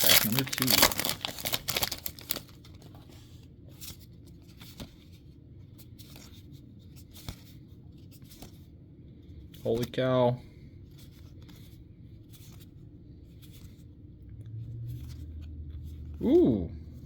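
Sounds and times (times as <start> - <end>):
wrapper tearing and crinkling: 0.0 - 2.8
cards rustling: 0.0 - 8.7.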